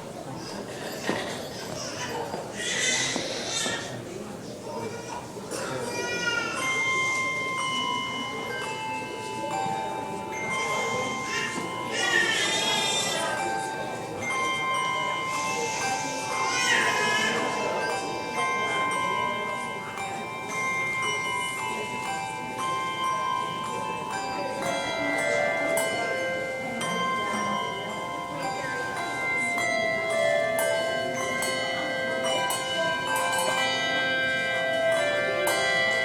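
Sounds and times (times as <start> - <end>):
handbell choir ringing a tune: 0.0 - 36.0.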